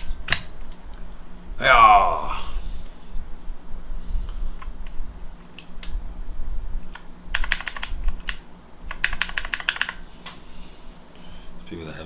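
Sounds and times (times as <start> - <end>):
mechanical keyboard typing: 6.9 - 10.0.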